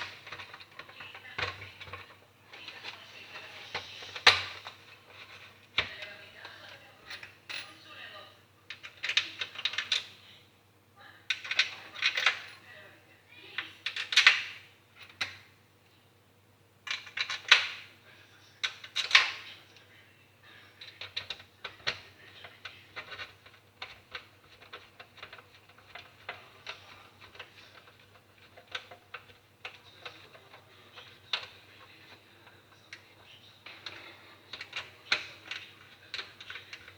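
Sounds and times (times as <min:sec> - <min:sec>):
small parts and tools clinking: 0:00.0 - 0:07.8, 0:20.8 - 0:36.9.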